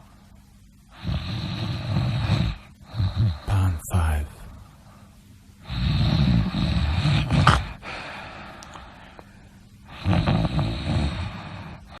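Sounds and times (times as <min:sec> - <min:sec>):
loud low buzzing snore: 0:00.9 - 0:03.7, 0:05.6 - 0:08.0, 0:09.8 - 0:12.0.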